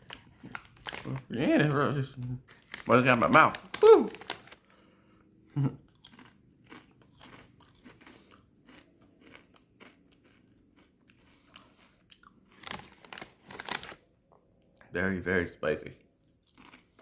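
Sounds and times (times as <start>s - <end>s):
chips crunching and chewing: 0.0s - 1.8s, 2.5s - 4.6s, 5.6s - 14.0s, 16.0s - 17.0s.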